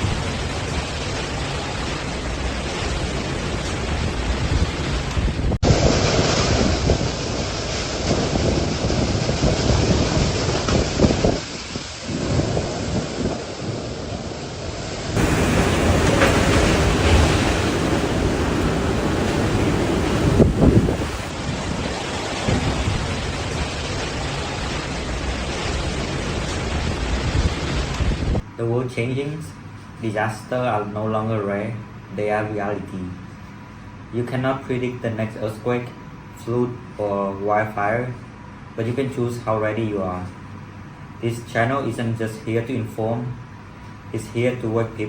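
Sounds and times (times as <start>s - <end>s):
wind gusts buffeting microphone: 0.0s - 23.8s
rushing wind and rain: 0.0s - 28.6s.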